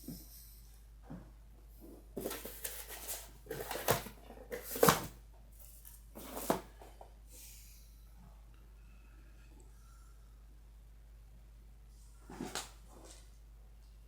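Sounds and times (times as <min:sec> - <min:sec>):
packaging rustling and scraping: 0:02.2 - 0:06.8.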